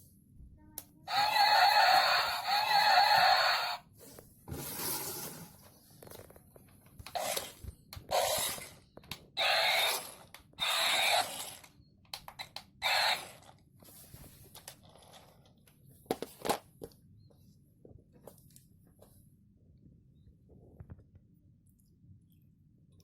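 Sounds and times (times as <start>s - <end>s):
toy dinosaur roars through speaker: 1.1s - 3.8s, 9.4s - 11.4s.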